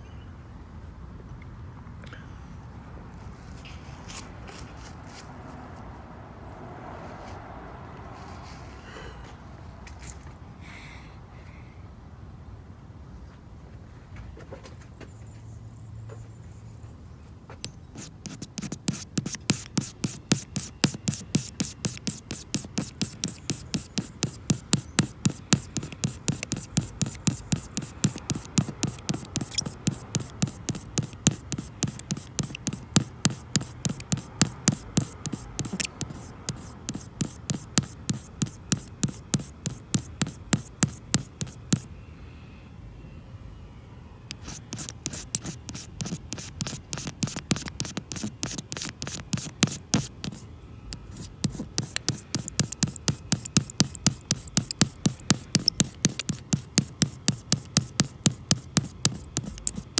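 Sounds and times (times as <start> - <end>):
scraping on hard surface: 17.9 - 41.9, 44.3 - 59.9.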